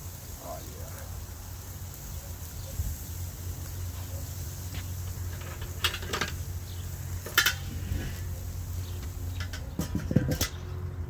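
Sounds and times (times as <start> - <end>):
metal utensils clinking on grill: 3.8 - 10.8.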